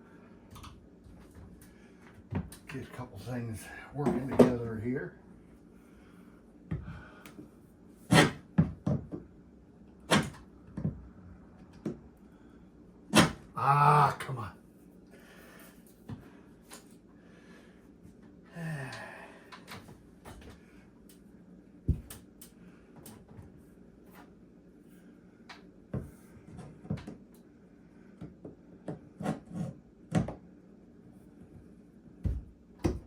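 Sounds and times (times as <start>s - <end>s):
claw tool prying wooden cabinet: 8.1s - 9.2s, 10.1s - 10.4s, 13.1s - 13.5s
person grunting: 13.5s - 14.5s, 18.5s - 19.4s.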